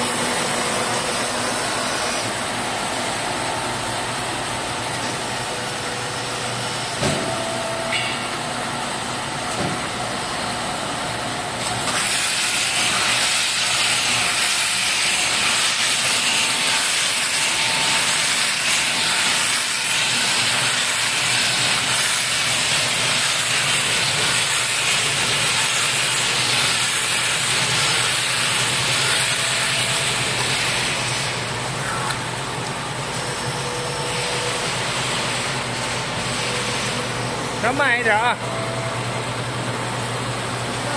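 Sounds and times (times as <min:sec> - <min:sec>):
baler mechanical hum: 0:00.0 - 0:40.9.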